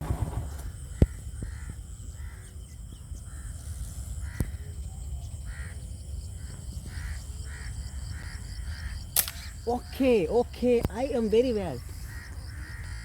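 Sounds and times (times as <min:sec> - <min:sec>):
crows cawing: 0:00.9 - 0:02.5, 0:04.2 - 0:04.7, 0:05.5 - 0:05.8, 0:06.4 - 0:09.6, 0:11.8 - 0:13.0
sharp click: 0:09.2 - 0:09.5.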